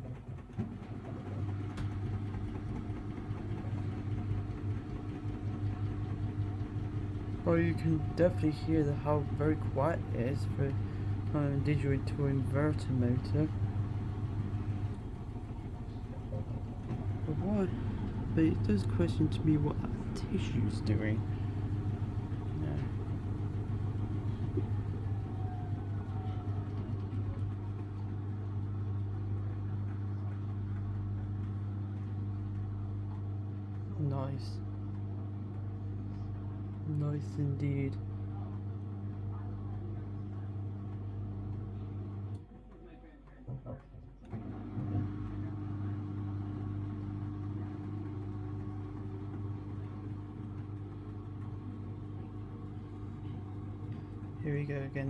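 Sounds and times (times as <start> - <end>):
washing machine spinning hum: 0.0 - 55.0.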